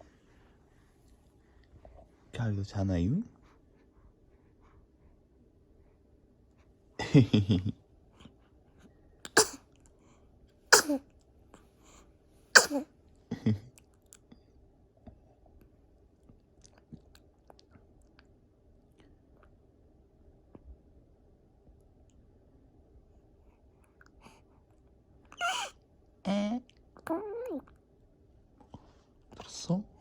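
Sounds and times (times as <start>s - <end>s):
baby sneezing: 9.3s - 9.6s, 10.7s - 11.0s, 12.6s - 12.9s, 25.4s - 25.7s.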